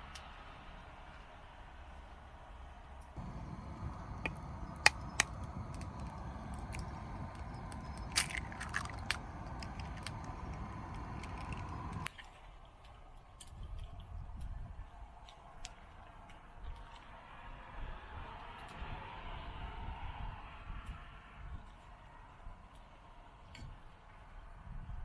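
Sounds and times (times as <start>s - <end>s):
light ticks: 3.2s - 12.1s
low rumble: 3.2s - 12.1s
wood fire crackling: 3.2s - 12.1s.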